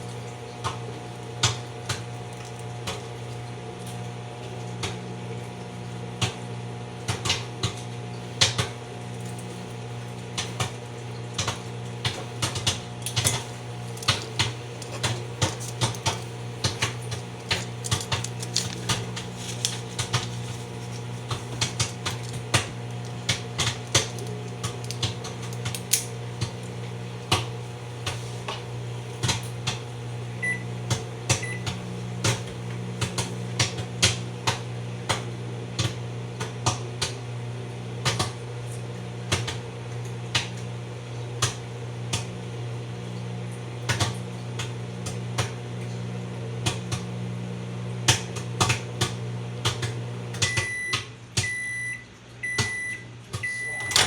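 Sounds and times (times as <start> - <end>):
microwave oven humming: 0.0 - 54.0
popcorn popping: 0.6 - 3.4, 11.4 - 37.2, 48.0 - 51.7.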